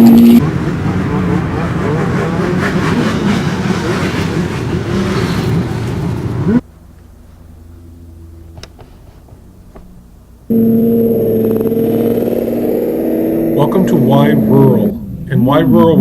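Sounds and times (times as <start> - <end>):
loud steady sound: 0.0 - 4.9, 9.7 - 16.0
snowmobile engines revving: 0.0 - 6.7, 7.4 - 16.0.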